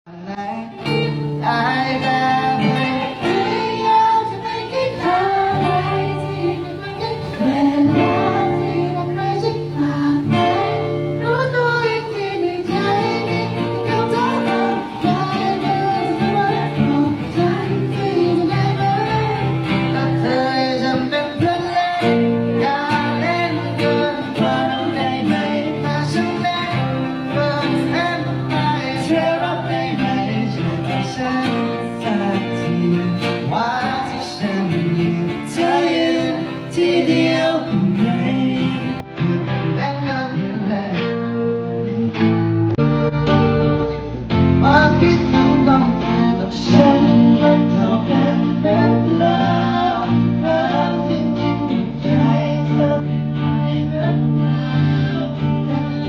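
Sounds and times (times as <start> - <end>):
guitar: 0.1 - 56.0
person singing: 0.1 - 56.0.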